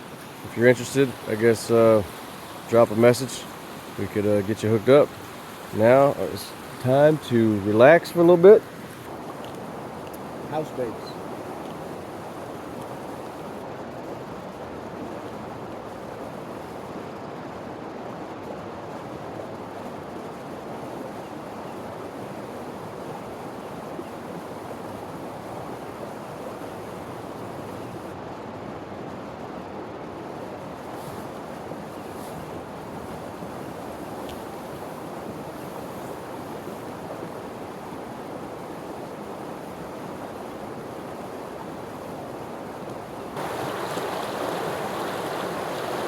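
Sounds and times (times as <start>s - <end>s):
creek water rushing: 0.0s - 14.3s, 30.6s - 46.0s.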